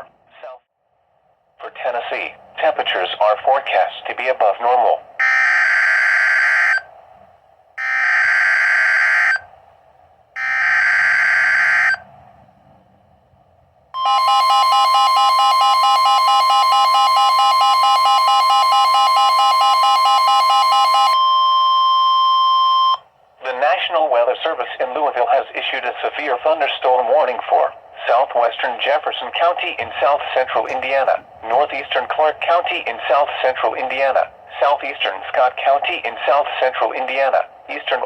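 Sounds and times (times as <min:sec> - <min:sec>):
loud attention tone: 0:10.4 - 0:12.0, 0:14.0 - 0:23.0.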